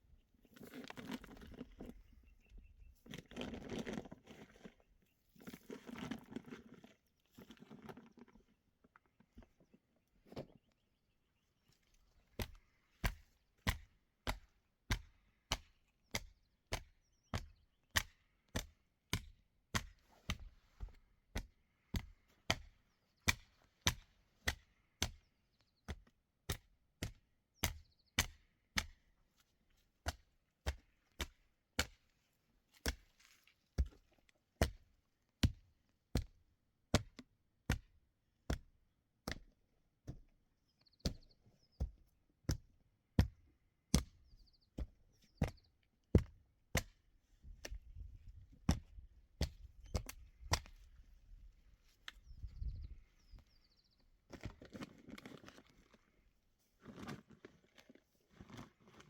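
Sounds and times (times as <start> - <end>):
blade chopping wood: 12.4 - 20.5, 21.3 - 25.2.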